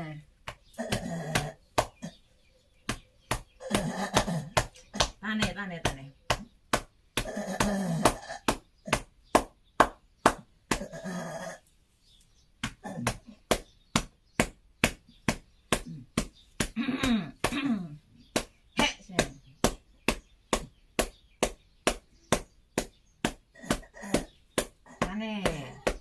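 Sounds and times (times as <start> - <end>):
hand slaps on a back: 8.5 - 10.8.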